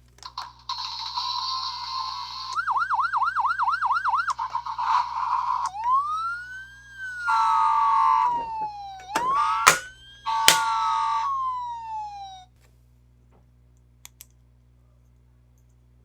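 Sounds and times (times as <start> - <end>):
toy siren wailing: 0.8 - 12.5
buzzy horn blare: 9.1 - 11.4.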